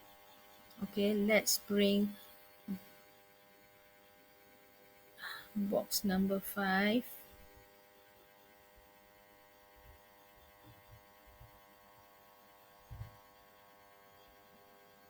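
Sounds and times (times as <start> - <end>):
faint electrical hum: 0.0 - 15.0
soft low thumps: 12.8 - 13.2.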